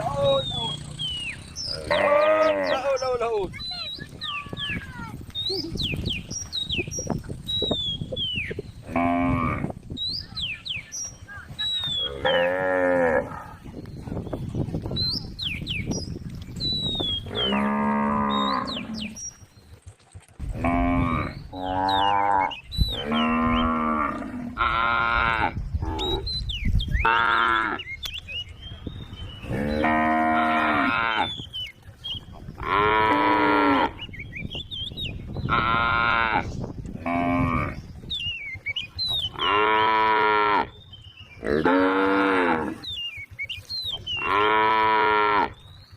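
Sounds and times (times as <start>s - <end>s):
cows mooing: 1.6s - 3.0s, 8.8s - 9.8s, 12.0s - 13.6s, 17.2s - 19.2s, 20.4s - 26.3s, 27.0s - 27.9s, 29.4s - 31.4s, 32.6s - 34.0s, 35.5s - 37.8s, 39.3s - 40.8s, 41.4s - 42.9s, 44.2s - 45.6s.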